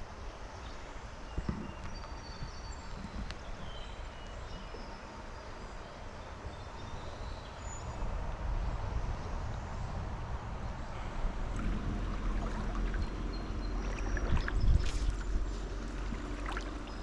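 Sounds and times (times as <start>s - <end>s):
wind rumble on microphone: 0.0s - 17.0s
creek water flowing: 2.8s - 17.0s.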